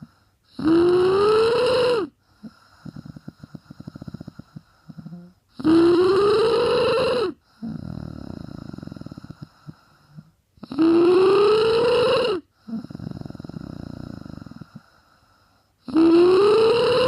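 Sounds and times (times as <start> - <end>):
person snoring loudly: 0.0 - 14.9, 15.8 - 17.0.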